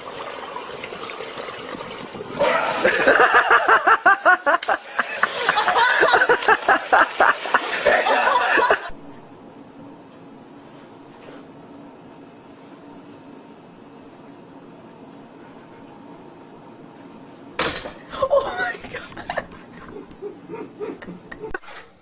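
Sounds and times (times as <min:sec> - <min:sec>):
person laughing hard: 0:02.4 - 0:08.9, 0:18.1 - 0:21.8.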